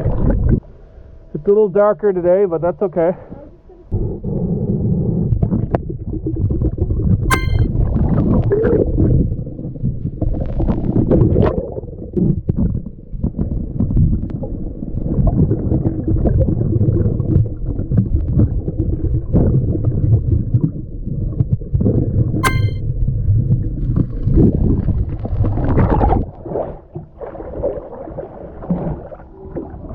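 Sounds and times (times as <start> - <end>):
ringing ping: 7.3 - 7.7, 22.4 - 22.8.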